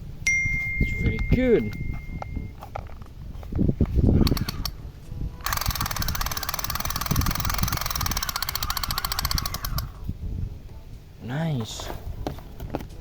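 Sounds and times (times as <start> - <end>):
toy gun rapid-fire effect: 5.4 - 9.9.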